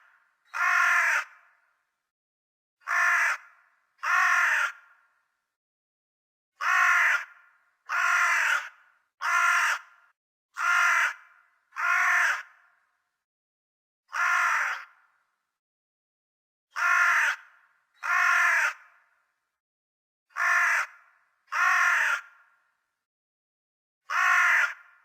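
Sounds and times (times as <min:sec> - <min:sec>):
crow cawing: 0:00.0 - 0:01.8, 0:02.8 - 0:05.3, 0:06.6 - 0:13.0, 0:14.1 - 0:15.3, 0:16.8 - 0:19.4, 0:20.3 - 0:22.8, 0:24.1 - 0:25.0.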